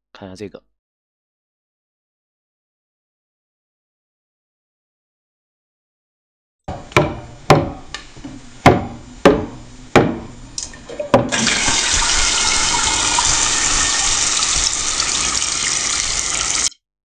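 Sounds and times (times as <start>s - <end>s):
sharp knocks: 6.7s - 10.3s
water running from a tap: 11.3s - 16.8s.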